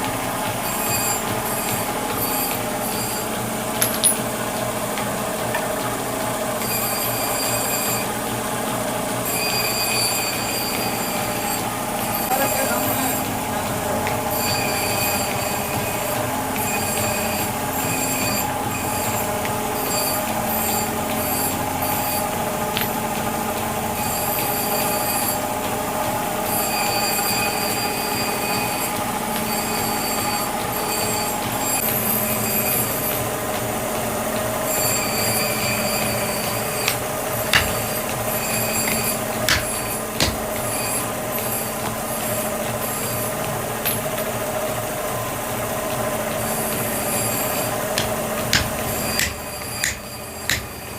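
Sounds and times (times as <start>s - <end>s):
metalworking machine running: 0.0s - 50.9s
metal-on-metal squeal: 0.6s - 4.2s, 6.6s - 8.2s, 9.2s - 13.3s, 14.2s - 23.0s, 23.9s - 25.6s, 26.4s - 33.2s, 34.6s - 43.4s, 46.4s - 50.9s
sharp knocks: 36.9s - 40.7s, 48.0s - 50.8s.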